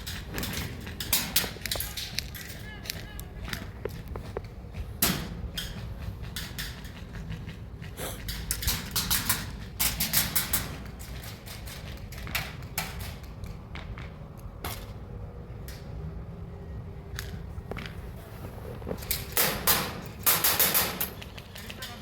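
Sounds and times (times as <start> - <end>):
steady low rumble: 0.0 - 22.0.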